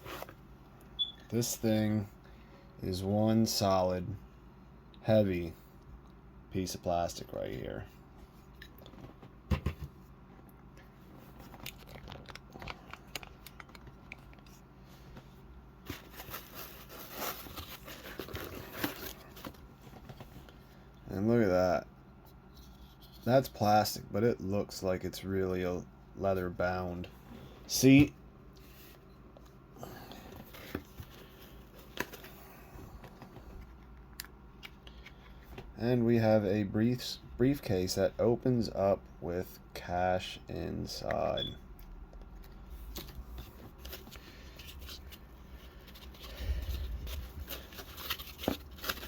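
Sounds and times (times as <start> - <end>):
packaging rustling: 15.8 - 20.1, 43.0 - 49.0.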